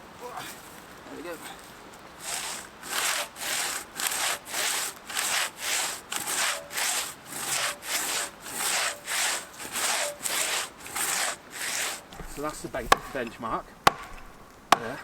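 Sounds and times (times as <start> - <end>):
hand saw rasping through wood: 2.2 - 15.0.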